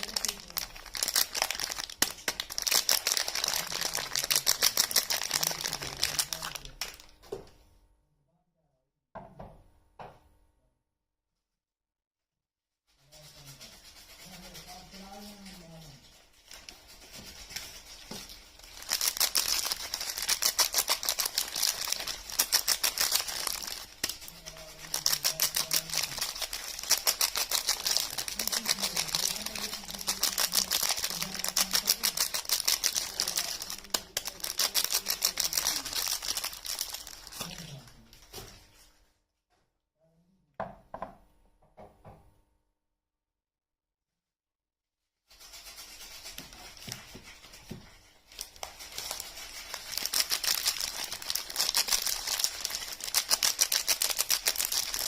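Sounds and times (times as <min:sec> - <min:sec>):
wrapper crinkling: 0:00.0 - 0:07.2, 0:13.8 - 0:38.9, 0:45.4 - 0:55.0.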